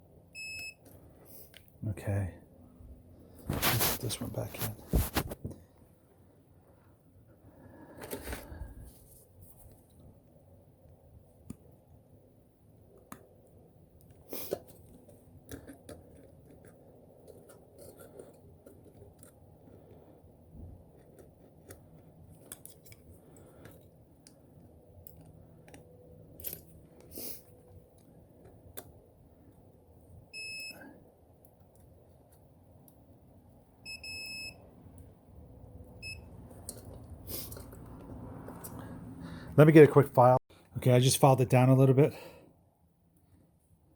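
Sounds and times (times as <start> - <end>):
multimeter beeping: 0.4 - 0.9, 30.3 - 30.8, 33.8 - 34.6, 36.0 - 36.3.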